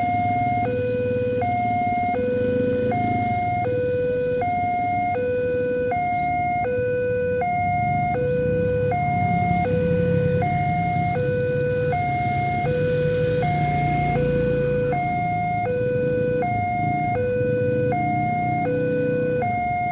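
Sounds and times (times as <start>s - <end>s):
level crossing warning siren: 0.0s - 19.9s.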